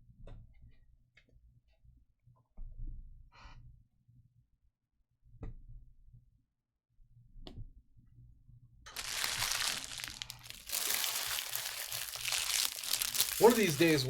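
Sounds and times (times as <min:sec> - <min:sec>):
foil wrapper tearing and crinkling: 0:08.9 - 0:14.0.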